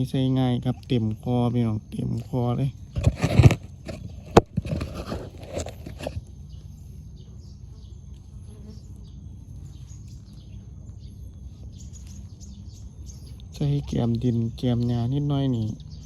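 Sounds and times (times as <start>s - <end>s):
insect whine: 0.0s - 16.0s
handling rustle: 2.9s - 6.4s
faint bird chirps: 5.4s - 16.0s.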